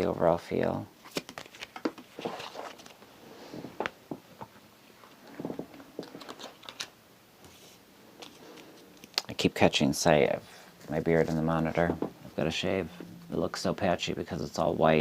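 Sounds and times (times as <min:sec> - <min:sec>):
cards being shuffled: 0:01.0 - 0:04.0, 0:05.0 - 0:09.3.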